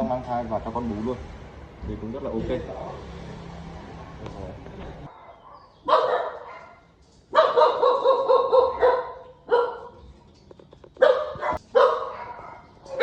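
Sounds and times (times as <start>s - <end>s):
puppy barking: 5.1s - 10.0s, 11.0s - 13.0s.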